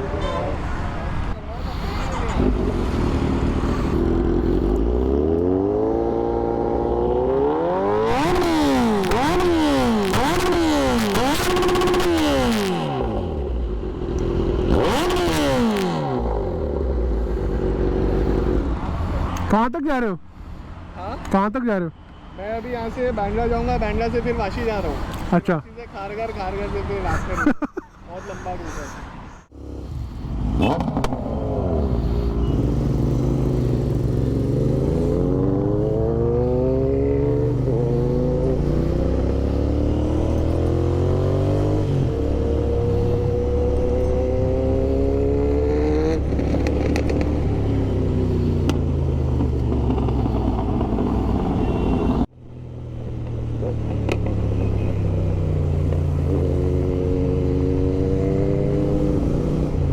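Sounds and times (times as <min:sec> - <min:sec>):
motorcycle engine accelerating: 0:02.2 - 0:18.4, 0:29.5 - 0:59.9.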